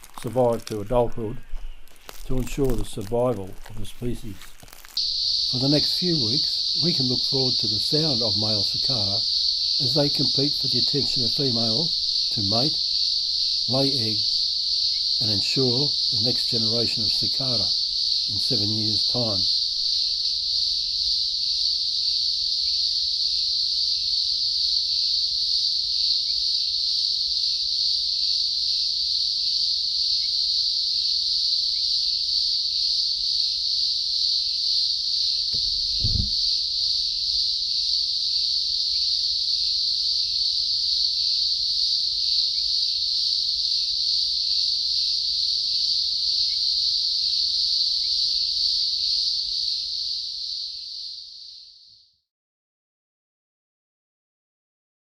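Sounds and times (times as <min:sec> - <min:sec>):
cicadas droning: 0:00.0 - 0:52.2
low thump: 0:35.5 - 0:36.5.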